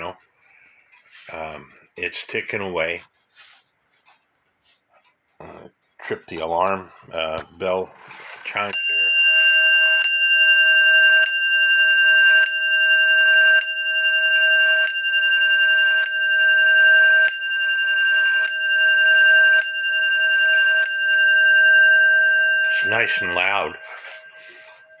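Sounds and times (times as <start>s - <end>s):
clock bell striking: 7.4s - 25.0s.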